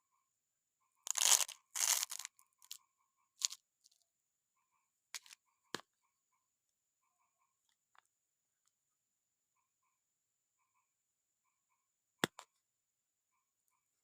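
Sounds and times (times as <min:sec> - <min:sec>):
candy wrapper tearing: 0:01.1 - 0:02.3
wrapper crinkling: 0:01.1 - 0:02.3.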